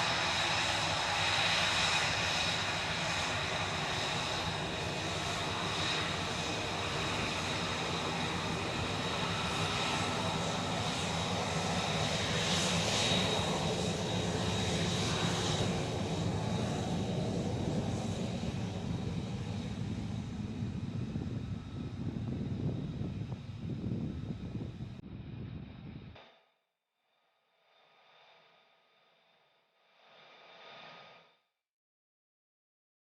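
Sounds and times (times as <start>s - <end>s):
jet engine whine: 0.0s - 26.1s.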